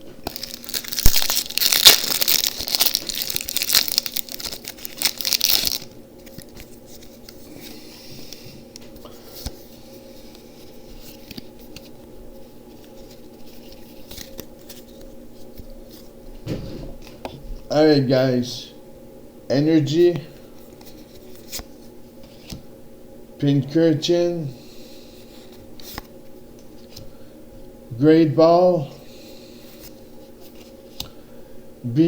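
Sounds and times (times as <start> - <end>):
foil wrapper crinkling and tearing: 0.2 - 7.2
cards rustling: 0.2 - 8.4, 9.0 - 16.1, 20.1 - 22.6, 24.9 - 27.2.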